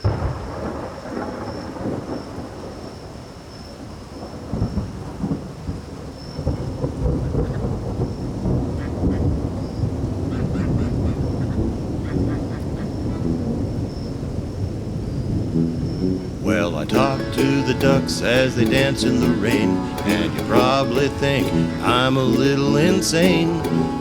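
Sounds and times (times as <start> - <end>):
rolling thunder: 0.0 - 12.0
rain falling: 0.0 - 15.1.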